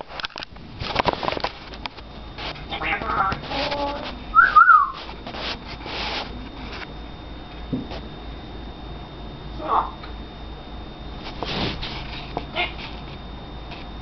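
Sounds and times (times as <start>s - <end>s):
parrot squawk: 2.7s - 5.0s
parrot whistle rising and falling: 4.3s - 5.0s.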